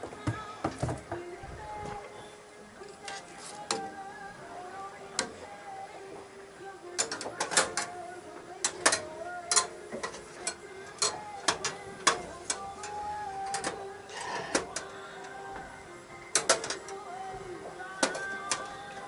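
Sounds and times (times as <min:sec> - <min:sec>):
quiet background music: 0:00.0 - 0:19.0
utensils and cookware clicking: 0:07.0 - 0:08.0, 0:08.6 - 0:15.4, 0:16.3 - 0:17.0, 0:18.0 - 0:19.0.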